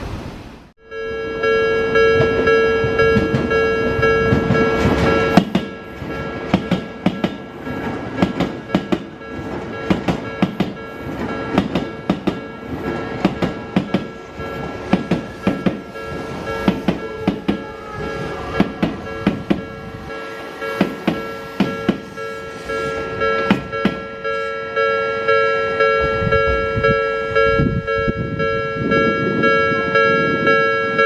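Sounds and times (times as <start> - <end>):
crossing warning bell: 0.8 - 31.0
train wheels clacking over rail joints: 2.2 - 19.8, 20.6 - 24.1.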